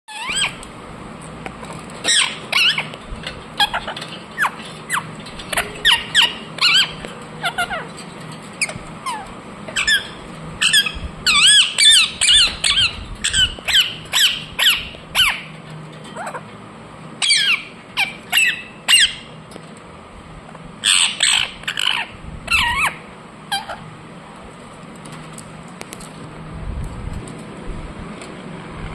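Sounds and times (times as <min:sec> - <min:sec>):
parrot chirping and squawking: 0:00.1 - 0:00.6, 0:02.0 - 0:16.5, 0:17.2 - 0:19.4, 0:20.8 - 0:23.9.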